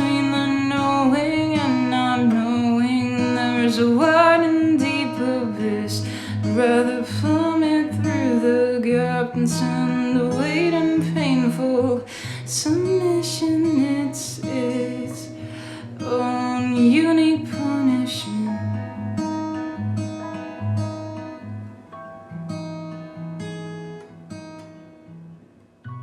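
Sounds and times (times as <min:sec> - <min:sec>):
person singing: 0:00.0 - 0:15.4
fingerpicked acoustic guitar: 0:00.0 - 0:26.0.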